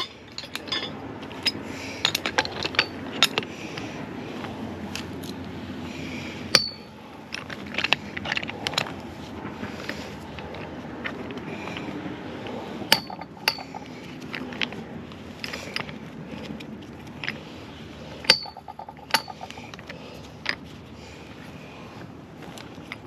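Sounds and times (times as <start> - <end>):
metal tools clinking together: 0.0 - 3.4, 12.9 - 14.7, 18.2 - 19.8.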